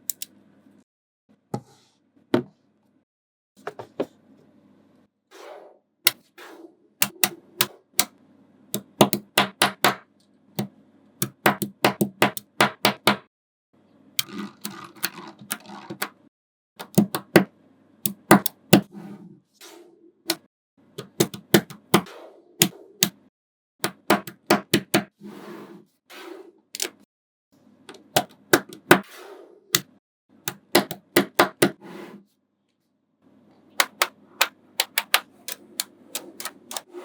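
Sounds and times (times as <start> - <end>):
loose balls rattling: 14.2 - 16.2
magnetic balls clicking together: 14.2 - 16.2, 33.8 - 36.9.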